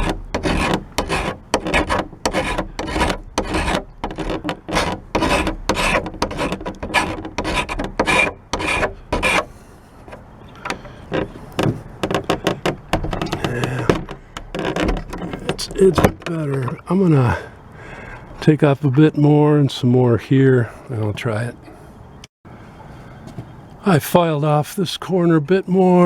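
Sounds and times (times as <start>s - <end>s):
hand file rasping on metal: 0.0s - 16.8s.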